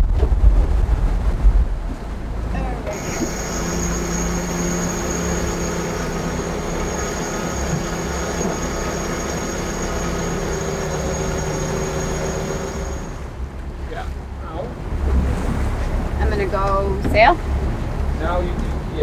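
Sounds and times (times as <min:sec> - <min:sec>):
electric winch whining: 0:02.8 - 0:13.4.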